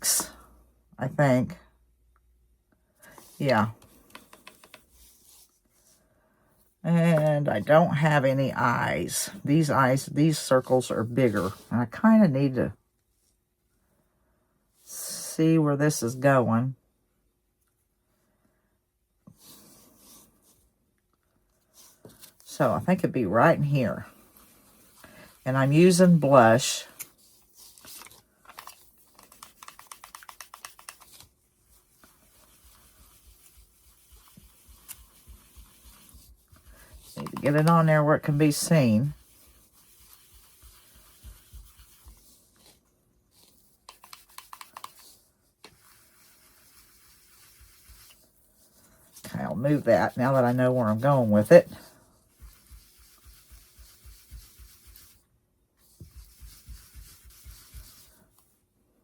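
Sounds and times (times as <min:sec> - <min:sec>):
brush rubbing strokes: 0:19.4 - 0:20.6, 0:23.4 - 0:58.6
brush tapping on wood: 0:39.2 - 0:42.2, 0:43.9 - 0:45.1, 0:52.4 - 0:55.1, 0:55.9 - 0:58.1.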